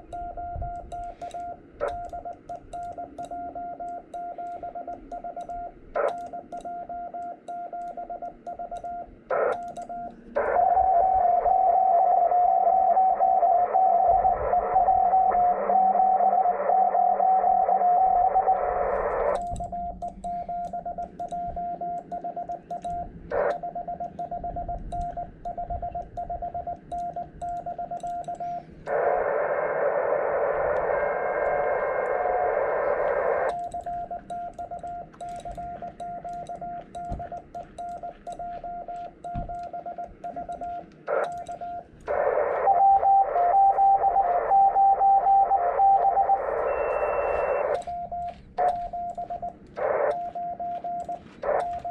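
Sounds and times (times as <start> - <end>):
morse code tone: 0.0 - 51.9
radio receiver hiss: 9.3 - 20.8, 28.3 - 34.4, 41.1 - 51.9
higher-pitched keyed tone: 30.7 - 51.9.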